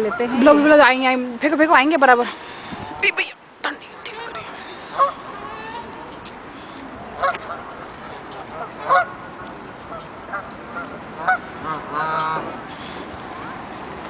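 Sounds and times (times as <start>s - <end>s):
geese honking: 4.1s - 6.2s, 7.2s - 12.6s.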